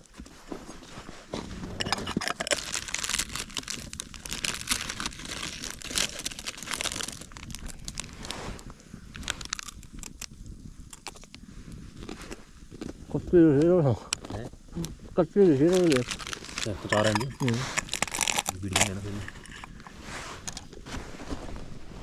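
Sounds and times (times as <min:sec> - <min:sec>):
plastic crinkling: 0:01.8 - 0:10.3, 0:15.5 - 0:21.4.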